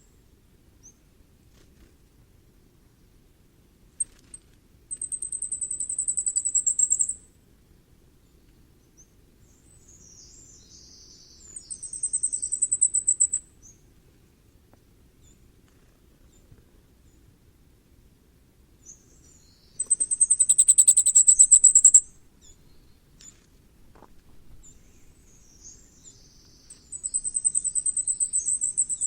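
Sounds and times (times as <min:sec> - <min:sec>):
lower bird twitter: 0:04.0 - 0:07.3, 0:08.3 - 0:13.9, 0:18.8 - 0:23.4, 0:24.6 - 0:29.0
bird singing high thin notes: 0:19.8 - 0:22.2.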